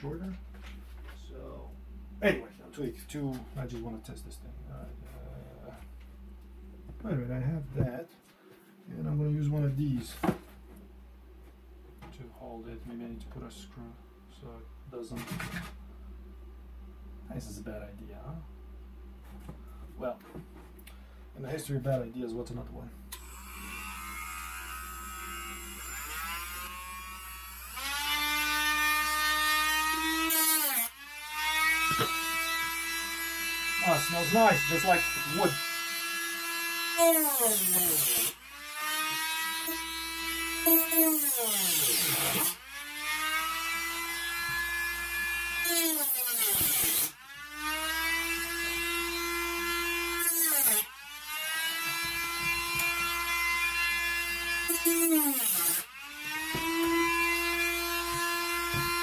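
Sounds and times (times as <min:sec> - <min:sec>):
rotary tool cutting wood: 0:23.1 - 0:59.0.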